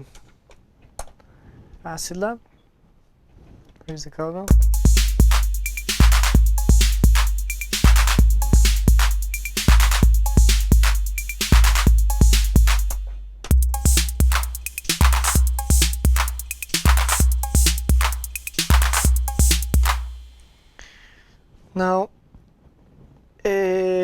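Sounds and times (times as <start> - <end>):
booming bass drum: 4.5 - 20.4
ticking hi-hats: 4.5 - 20.8.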